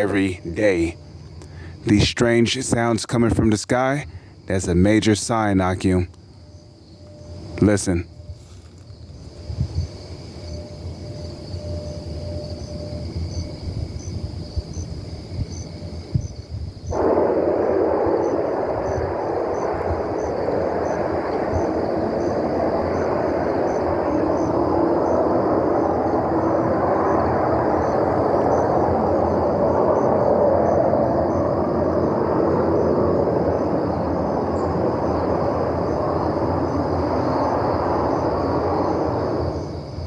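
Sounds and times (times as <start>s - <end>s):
crickets chirping: 0.0s - 40.0s
loud roar from sky: 16.9s - 40.0s.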